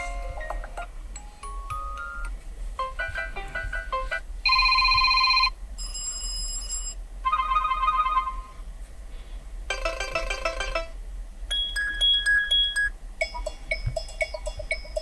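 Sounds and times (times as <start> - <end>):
melodic ringtone: 0.0 - 5.5, 7.3 - 8.4, 9.7 - 14.5
electronic ringtones from phone speaker: 4.5 - 8.2.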